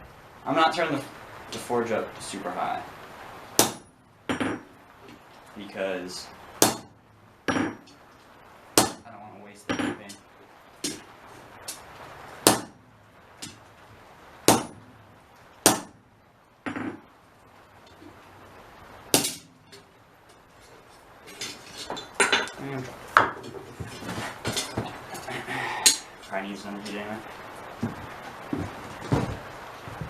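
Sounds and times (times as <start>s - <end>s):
hammer striking hot steel: 3.6s - 4.7s, 6.6s - 8.0s, 8.8s - 10.2s, 10.8s - 12.8s, 13.4s - 13.7s, 14.5s - 15.0s, 15.6s - 16.0s, 19.1s - 19.9s, 21.3s - 27.0s
metal clatter: 19.2s - 25.3s.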